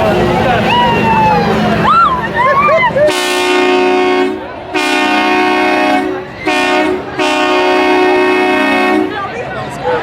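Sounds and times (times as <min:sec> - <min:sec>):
train horn blasts: 0:03.1 - 0:09.2.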